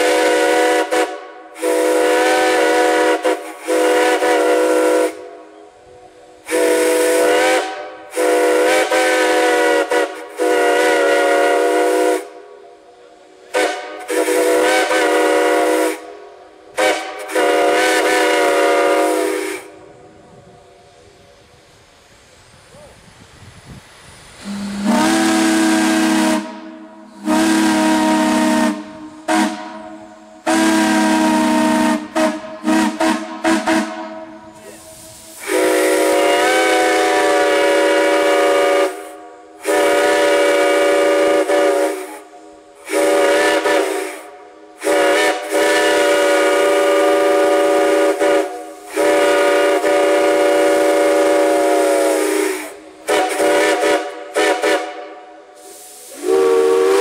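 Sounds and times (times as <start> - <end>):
deep steam whistle toots: 0.0 - 57.0.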